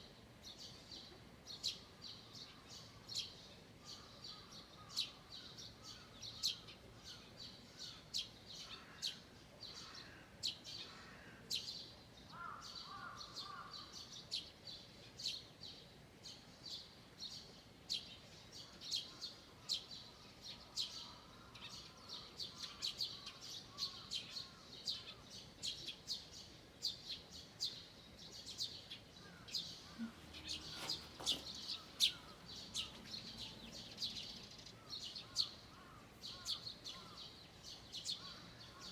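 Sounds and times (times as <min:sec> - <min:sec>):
birds chirping and singing: 0:18.6 - 0:38.9.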